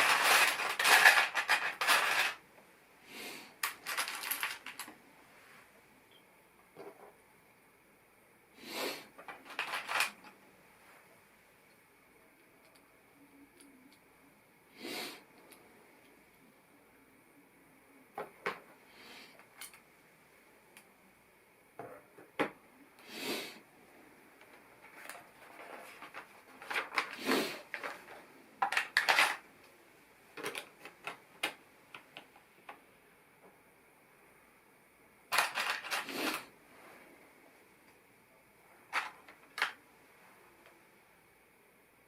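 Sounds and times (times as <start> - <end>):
plastic bricks clicking and rattling: 0.0 - 2.4, 3.6 - 4.9, 9.2 - 10.3, 24.9 - 29.4, 35.3 - 36.4.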